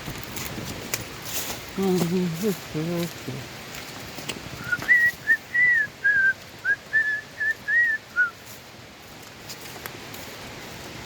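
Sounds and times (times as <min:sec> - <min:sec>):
whistled notes: 0:04.6 - 0:08.4.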